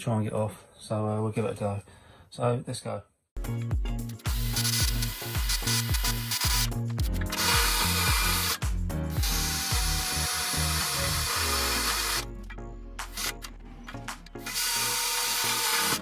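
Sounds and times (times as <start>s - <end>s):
music with bass line: 3.4s - 14.5s
power tool running: 4.2s - 12.3s, 13.0s - 16.0s.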